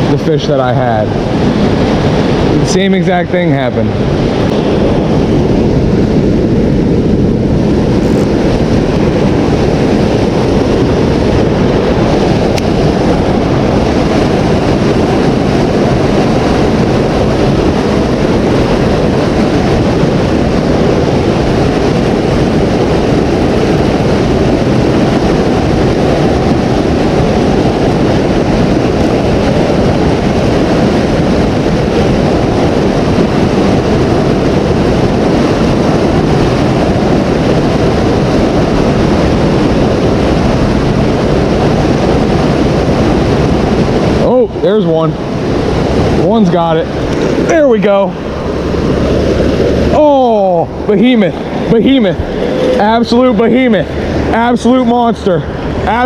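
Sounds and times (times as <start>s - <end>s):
wind on microphone: 0.0s - 56.0s
river water rushing: 39.7s - 56.0s.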